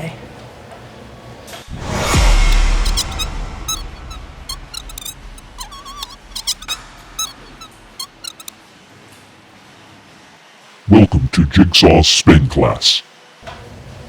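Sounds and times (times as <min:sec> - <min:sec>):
loud whoosh with deep boom: 0:01.7 - 0:05.6
high-pitched squeaks: 0:01.7 - 0:08.5.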